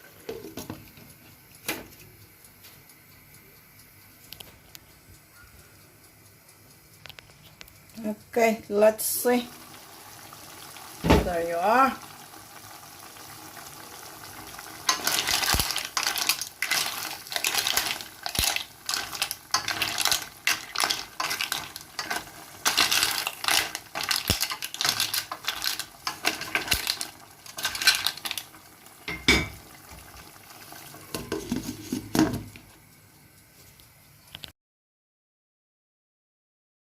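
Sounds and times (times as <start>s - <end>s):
utensil scraping a pan: 14.9s - 28.3s, 31.1s - 32.4s
shells clattering against pan: 14.9s - 28.4s.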